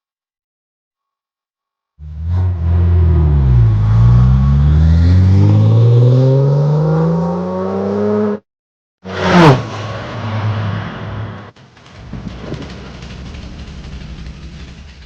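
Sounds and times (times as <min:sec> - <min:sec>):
car engine accelerating: 0:02.0 - 0:08.4, 0:09.1 - 0:15.0
car passing by: 0:02.0 - 0:08.4
engine running quietly: 0:11.8 - 0:15.0.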